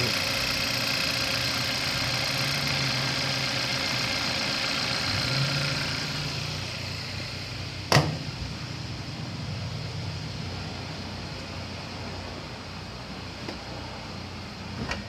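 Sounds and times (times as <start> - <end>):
car engine idling: 0.0 - 14.8
sharp thump: 7.9 - 8.4.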